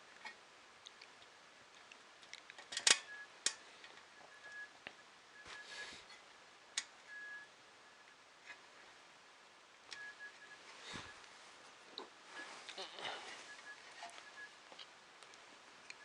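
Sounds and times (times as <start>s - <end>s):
small parts clicking and tapping: 2.2s - 4.6s.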